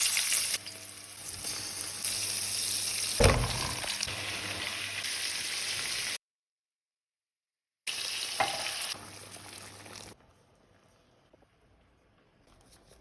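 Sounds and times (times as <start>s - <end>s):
food sizzling in a pan: 0.0s - 6.2s, 7.9s - 10.2s.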